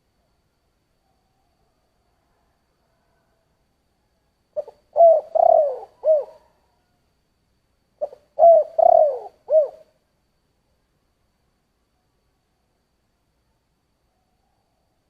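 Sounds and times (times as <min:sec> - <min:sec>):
dove cooing: 0:04.6 - 0:07.0, 0:08.0 - 0:09.9.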